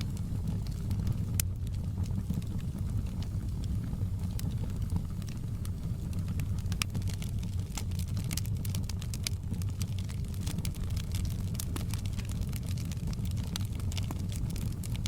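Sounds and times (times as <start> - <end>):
log fire crackling and popping: 0.0 - 15.0.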